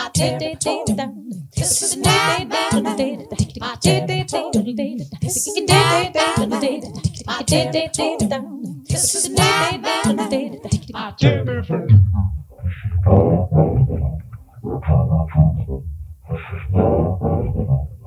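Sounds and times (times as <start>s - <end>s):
woman singing a cappella: 0.0s - 11.2s.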